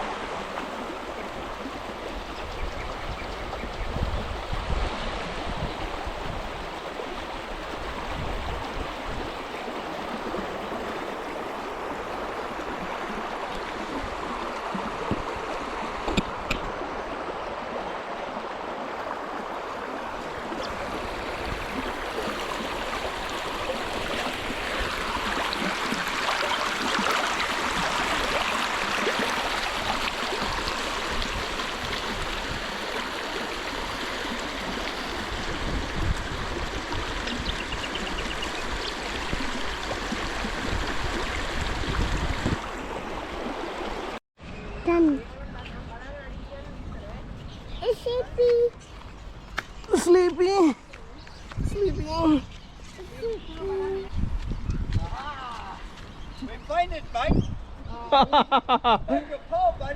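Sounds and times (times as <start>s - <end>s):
river water over rocks: 0.0s - 44.2s.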